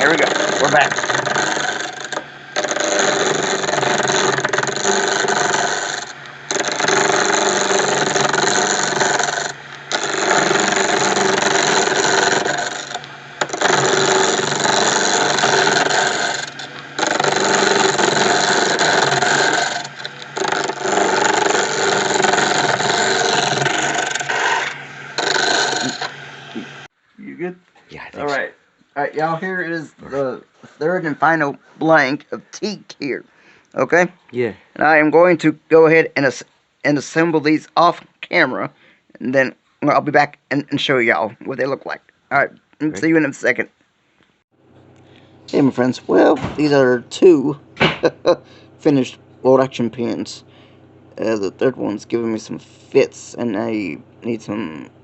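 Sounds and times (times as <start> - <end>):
wood lathe turning wood: 0.0 - 26.9, 45.1 - 55.0.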